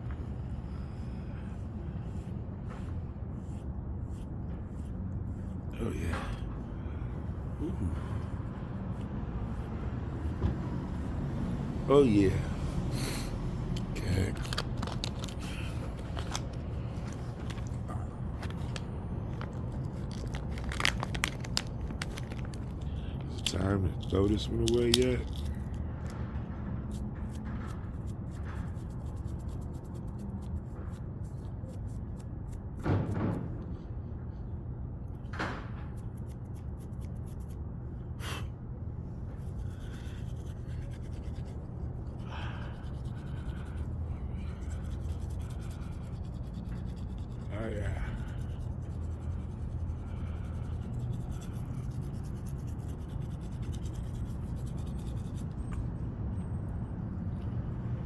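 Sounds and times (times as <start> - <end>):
steady low hum: 0.0 - 32.8, 33.4 - 58.0
comb scratching through hair: 1.4 - 5.8, 18.4 - 25.7, 39.3 - 55.8
handling clicks and crackles: 13.8 - 26.2.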